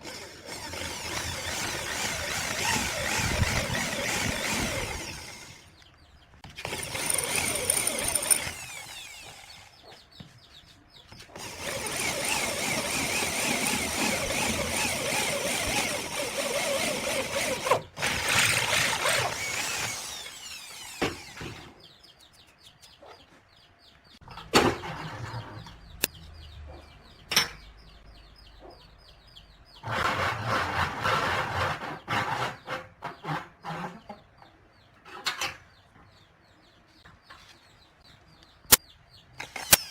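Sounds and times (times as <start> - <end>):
angle grinder on wood: 0.0 - 5.7, 6.6 - 9.8, 11.4 - 21.7.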